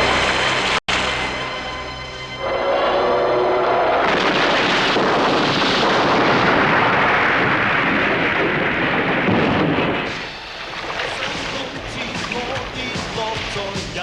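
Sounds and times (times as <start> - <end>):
explosion-like roar: 2.4 - 10.4.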